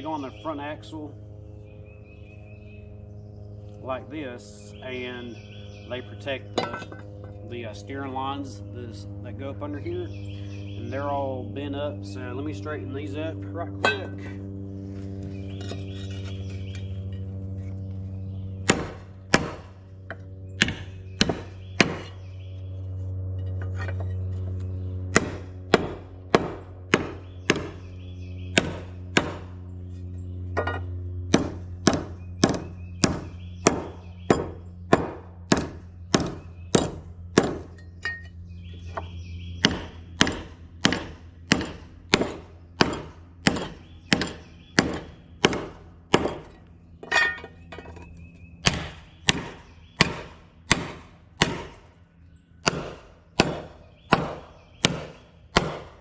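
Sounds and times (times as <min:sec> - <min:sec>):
steady hum: 0:00.0 - 0:56.0
hammer striking metal: 0:13.8 - 0:14.3, 0:48.7 - 0:51.8, 0:52.6 - 0:55.9.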